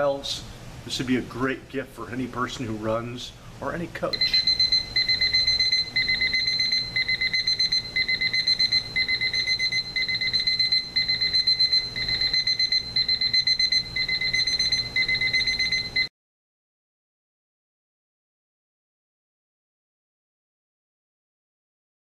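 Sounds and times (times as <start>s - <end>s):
alarm clock beeping: 4.2s - 16.1s.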